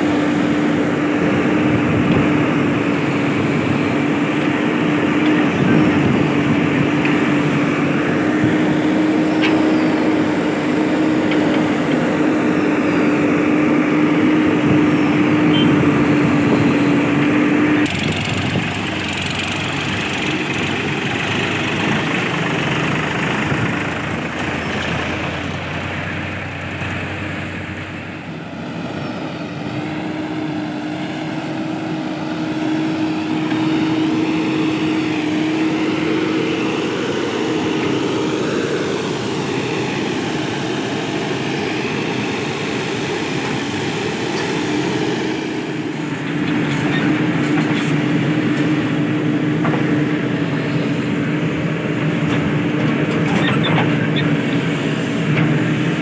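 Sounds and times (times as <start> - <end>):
diesel engines running: 0.0 - 56.0.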